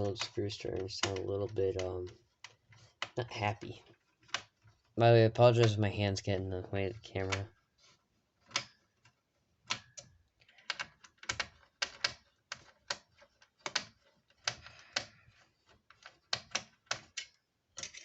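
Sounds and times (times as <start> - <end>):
screwdriver clicking and scraping: 9.7 - 18.0.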